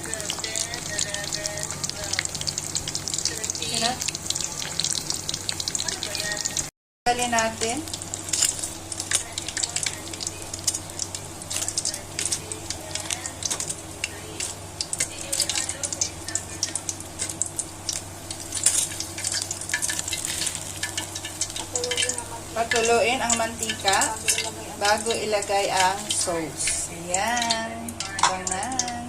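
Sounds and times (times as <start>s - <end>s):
chicken wings sizzling in oil: 0.0s - 29.0s
utensil stirring in a wok: 7.4s - 29.0s.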